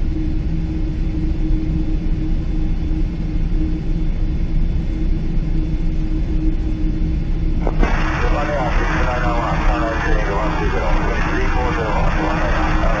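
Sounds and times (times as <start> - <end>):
low hum: 0.0 - 13.0
airliner cabin rumble: 4.8 - 13.0.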